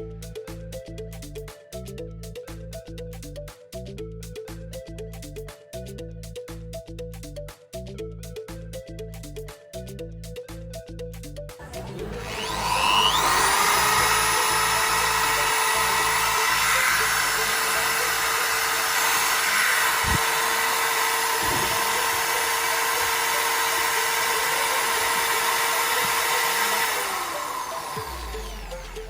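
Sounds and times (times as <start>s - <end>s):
background music with beat: 0.0s - 29.0s
electric drill whining: 11.6s - 29.0s.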